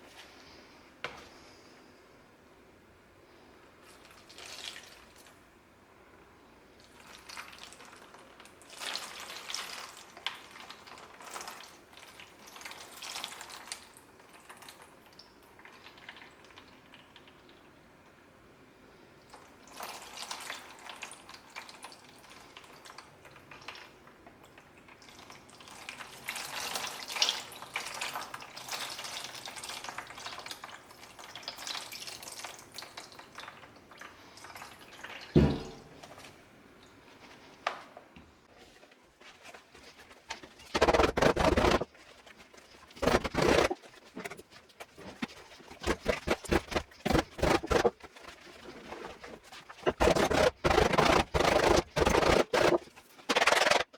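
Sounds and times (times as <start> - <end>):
thump: 35.4 - 35.8
loud handling noise: 39.8 - 42.0, 42.6 - 53.9.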